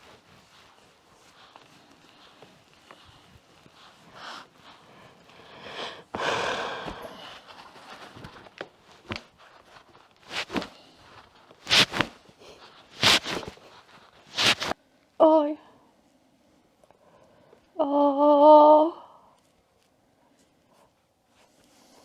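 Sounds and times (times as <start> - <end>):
person breathing sharply: 4.2 - 7.6.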